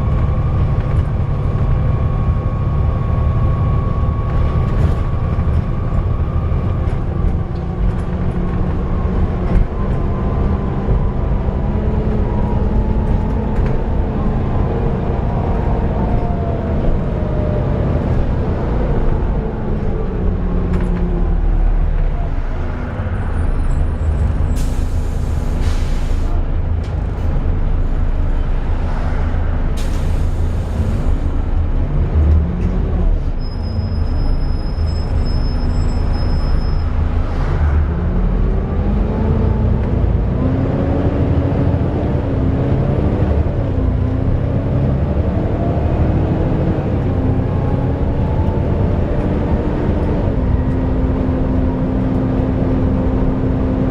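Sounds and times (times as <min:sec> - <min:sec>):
bus running heard on board: 0:00.0 - 0:53.9
air brake hisses: 0:24.5 - 0:26.4, 0:29.8 - 0:31.2.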